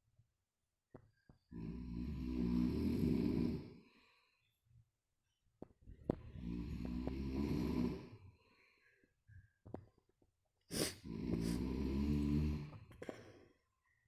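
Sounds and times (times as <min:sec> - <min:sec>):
heavy snoring: 0:01.5 - 0:03.8, 0:06.2 - 0:08.2, 0:10.7 - 0:12.9.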